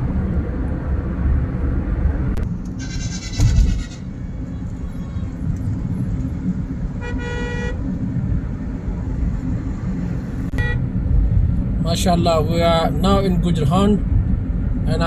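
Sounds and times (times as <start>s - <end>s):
car road and engine rumble: 0.0s - 15.0s
vehicle horn: 2.8s - 5.2s, 7.0s - 7.8s, 10.5s - 10.9s.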